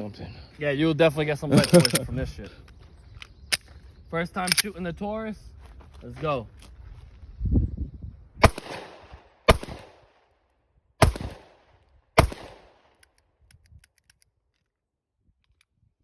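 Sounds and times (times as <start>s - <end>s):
pistol shots with echo: 8.4s - 10.3s, 11.0s - 13.0s.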